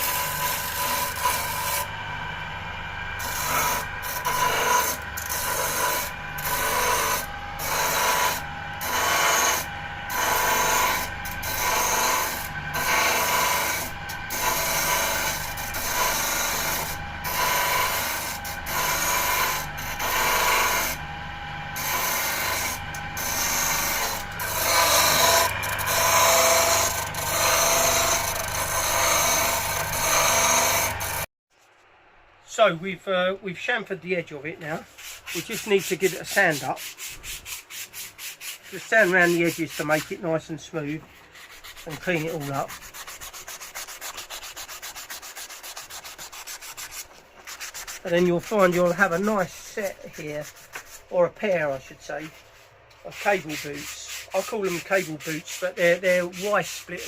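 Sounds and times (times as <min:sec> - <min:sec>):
electric disc sander humming: 0:00.0 - 0:31.3
wooden block grinding on sander: 0:00.0 - 0:31.3, 0:35.0 - 0:57.0.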